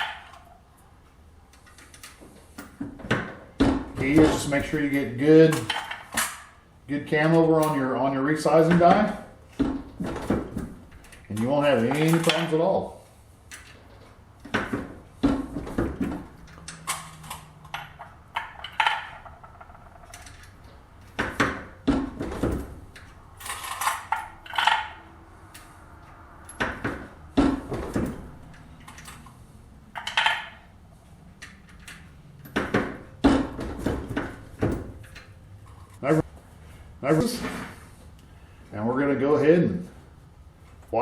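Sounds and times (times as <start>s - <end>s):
brass cases clinking on metal: 16.1s - 21.2s.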